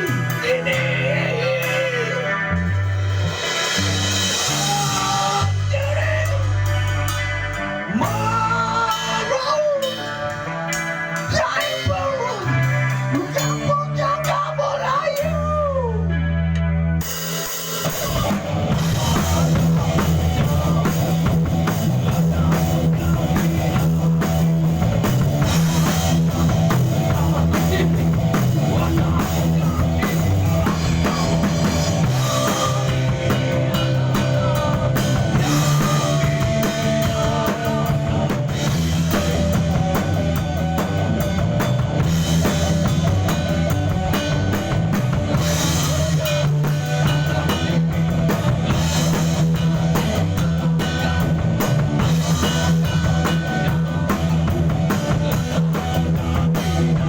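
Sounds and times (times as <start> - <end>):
bass guitar: 0.0 - 57.0
electric guitar: 0.0 - 57.0
bass drum: 17.8 - 57.0.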